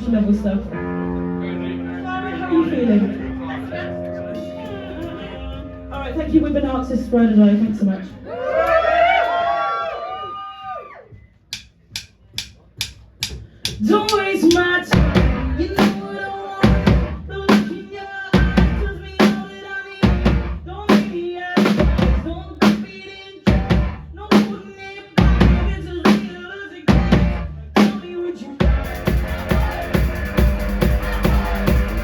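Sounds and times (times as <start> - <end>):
rock band playing: 3.6 - 6.6, 13.5 - 17.8, 18.4 - 22.9, 23.5 - 24.5, 26.9 - 28.0, 28.6 - 32.0.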